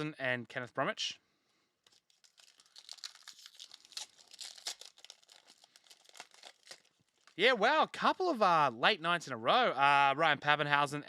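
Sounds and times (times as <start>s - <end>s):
wrapper crinkling and tearing: 1.8s - 7.4s.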